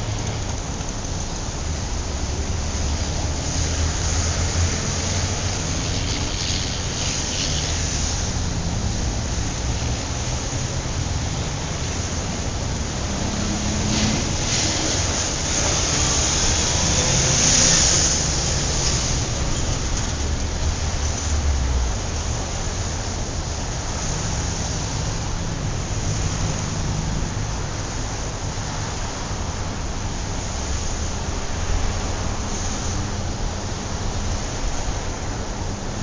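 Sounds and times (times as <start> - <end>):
cars passing: 0.0 - 36.0
tyre hiss: 0.1 - 28.0.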